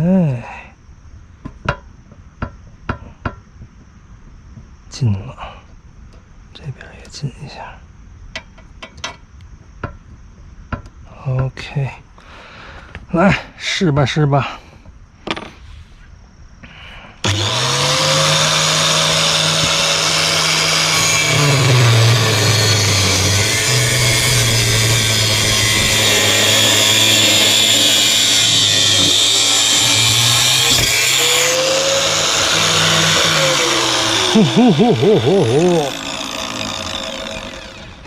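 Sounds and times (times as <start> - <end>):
angle grinder cutting: 17.2 - 38.0.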